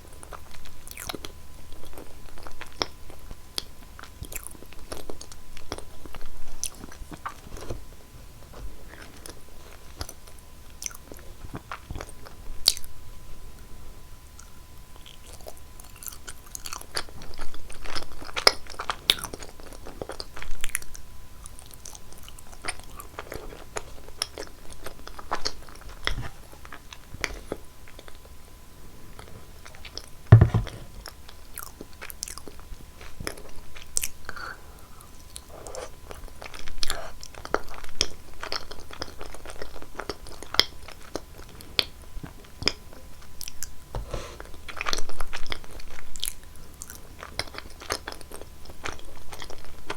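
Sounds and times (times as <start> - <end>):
crunchy chewing: 0.1 - 7.7
heavy thump: 30.3 - 31.0.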